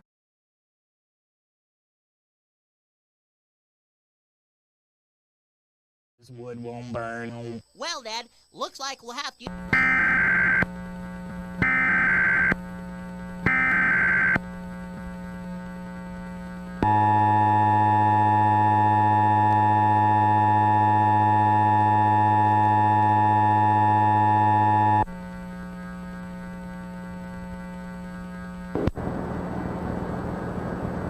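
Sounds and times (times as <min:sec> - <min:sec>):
low hum: 0:09.5 - 0:31.0
digital header bursts: 0:09.7 - 0:10.6
two-tone attention signal: 0:16.8 - 0:25.0.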